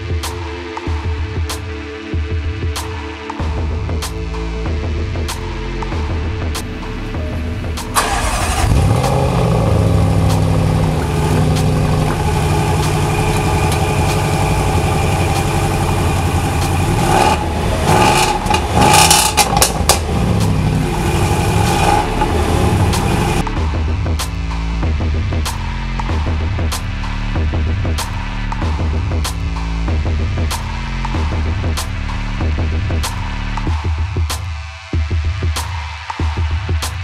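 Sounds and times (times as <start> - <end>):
car engine starting and idling: 7.8 - 23.4
engine revving: 7.9 - 23.6
exhaust crackles and pops: 8.0 - 23.4.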